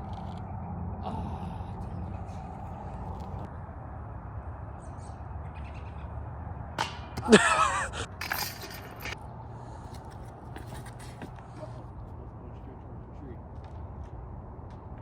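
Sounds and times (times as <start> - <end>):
metallic chain rattle: 8.1 - 9.2.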